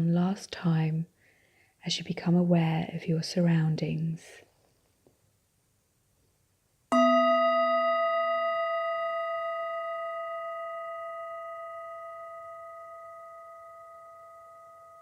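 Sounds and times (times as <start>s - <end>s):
meditation bell ringing: 6.9s - 15.0s.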